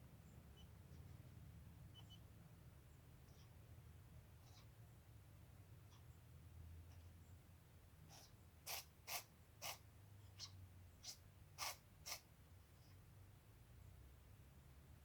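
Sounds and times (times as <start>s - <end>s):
cat sneezing: 8.1s - 9.8s, 11.6s - 12.2s.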